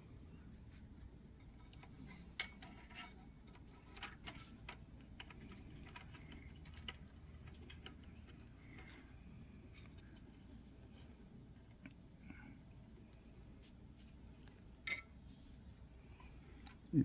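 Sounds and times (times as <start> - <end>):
low steady hum: 0.0 - 17.0
light metal clicks and taps: 1.4 - 10.4.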